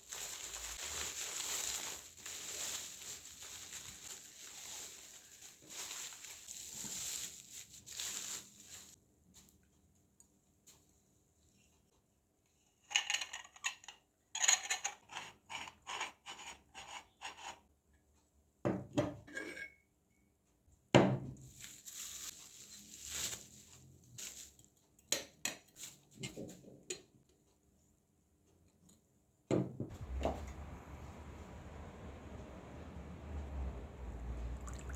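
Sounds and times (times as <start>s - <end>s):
rustling: 0.0s - 9.6s, 21.5s - 24.8s, 29.9s - 34.9s.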